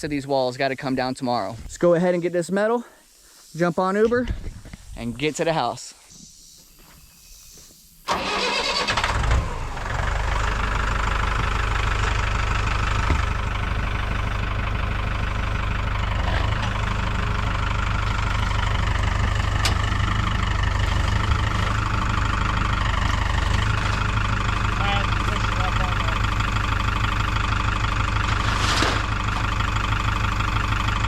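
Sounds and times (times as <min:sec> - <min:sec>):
engine idling: 0:08.1 - 0:31.0
vehicle engine cranking: 0:08.1 - 0:31.0.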